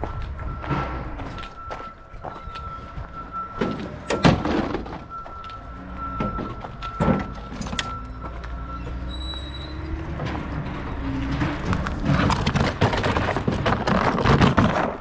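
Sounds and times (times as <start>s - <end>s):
rattling and knocking clatter: 10.0s - 15.0s.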